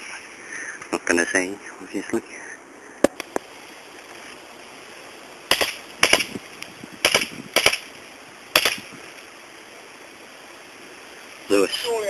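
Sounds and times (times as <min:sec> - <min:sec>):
airsoft guns firing: 0:05.5 - 0:06.4, 0:07.0 - 0:07.9, 0:08.5 - 0:08.9.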